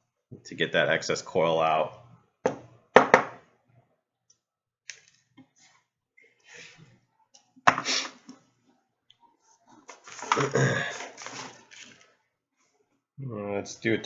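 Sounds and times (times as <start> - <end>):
faint scrapes: 9.3 - 12.8.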